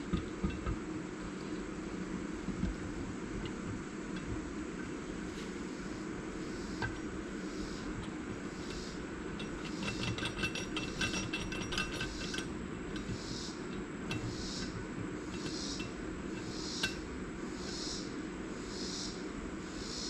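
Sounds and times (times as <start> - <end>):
metal parts clinking: 8.7 - 17.1.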